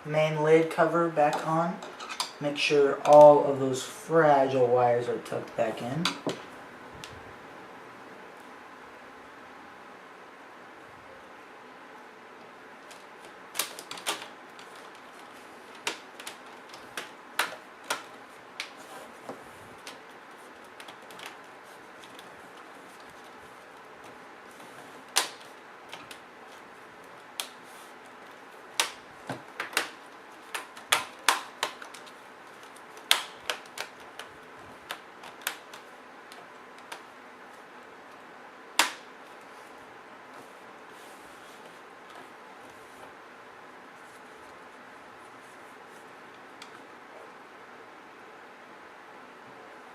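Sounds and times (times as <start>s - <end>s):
plastic clips clicking into place: 12.8s - 18.8s, 24.0s - 27.6s, 28.2s - 34.3s, 38.8s - 39.1s.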